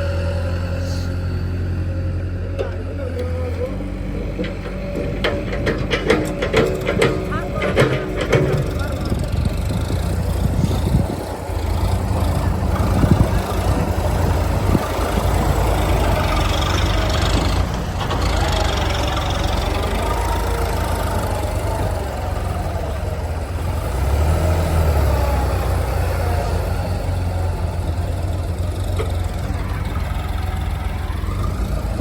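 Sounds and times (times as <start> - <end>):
heavy diesel machinery rumbling: 0.0 - 32.0
sharp knocks: 4.2 - 10.0.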